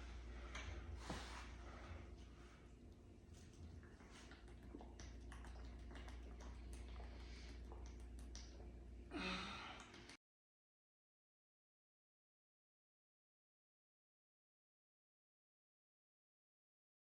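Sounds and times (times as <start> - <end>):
low hum: 0.0 - 10.2
person gulping soda: 2.9 - 10.2
breathy sigh: 9.1 - 10.1.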